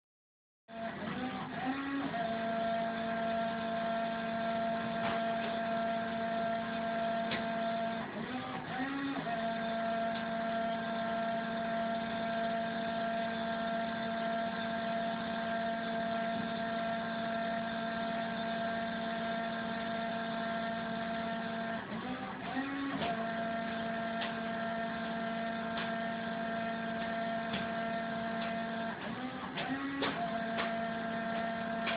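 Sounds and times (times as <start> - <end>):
printer humming: 0.7 - 31.9.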